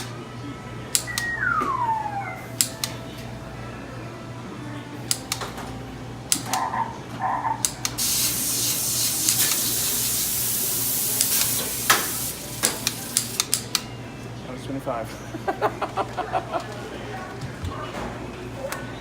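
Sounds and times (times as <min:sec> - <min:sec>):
short electronic tones: 0:01.1 - 0:02.6
gallery rifle clicks: 0:05.1 - 0:05.6, 0:06.3 - 0:06.6, 0:11.2 - 0:13.9
steady hiss: 0:08.0 - 0:13.6.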